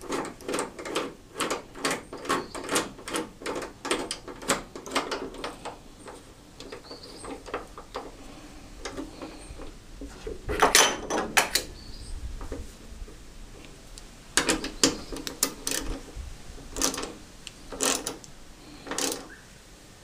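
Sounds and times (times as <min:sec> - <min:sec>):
hand tools clanking on bolts: 0:08.8 - 0:11.7, 0:14.4 - 0:16.1, 0:16.7 - 0:19.3.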